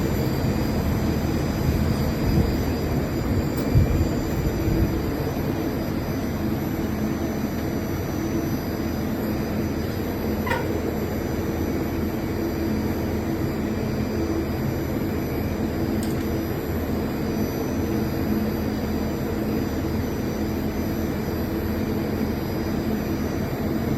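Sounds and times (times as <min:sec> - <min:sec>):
low electrical hum: 0:00.0 - 0:18.2
cooling fans whirring: 0:00.0 - 0:23.9.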